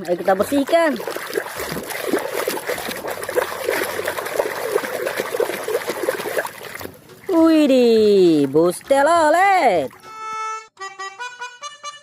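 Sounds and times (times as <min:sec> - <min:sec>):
water splashing and trickling: 0:00.0 - 0:10.3.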